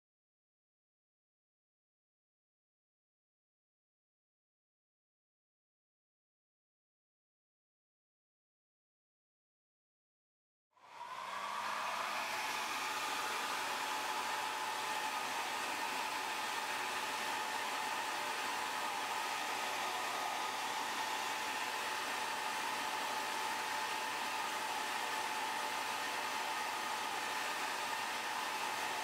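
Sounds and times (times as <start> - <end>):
hair dryer running: 10.8 - 29.0.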